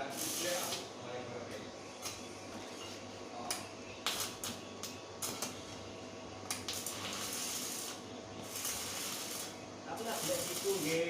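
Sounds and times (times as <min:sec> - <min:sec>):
steady hiss: 0:00.0 - 0:01.4, 0:06.5 - 0:11.0.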